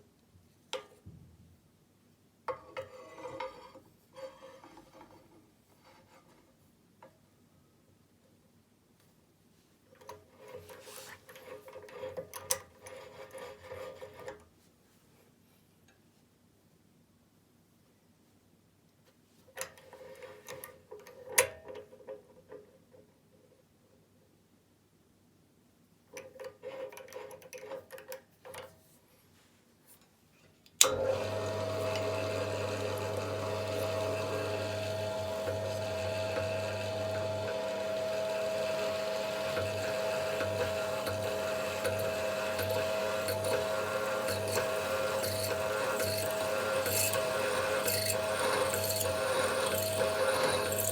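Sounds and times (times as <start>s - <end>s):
electric drill motor running: 30.9s - 50.9s
drill bit scraping metal rod: 31.1s - 50.9s.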